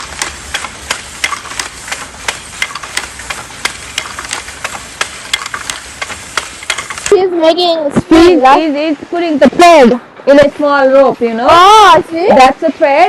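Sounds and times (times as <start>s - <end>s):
wooden handlooms clacking: 0.0s - 7.2s
steady hiss: 0.0s - 13.0s.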